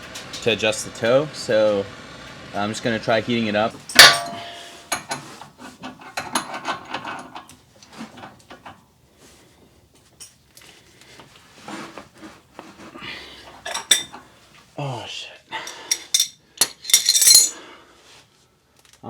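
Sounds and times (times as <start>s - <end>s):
hand tools clicking and scraping: 3.8s - 8.8s, 11.6s - 14.3s, 15.6s - 17.6s.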